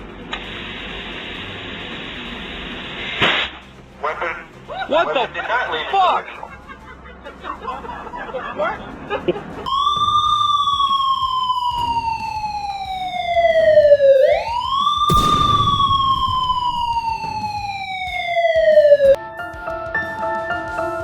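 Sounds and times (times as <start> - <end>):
music: 0.0 - 14.0, 19.2 - 21.0
sharp bang: 15.1 - 17.7.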